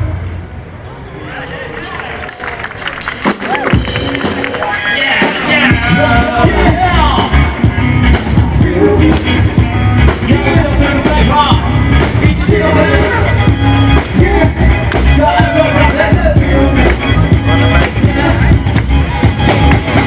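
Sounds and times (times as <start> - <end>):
loud music with heavy bass: 3.1 - 20.0
person singing: 4.5 - 20.0.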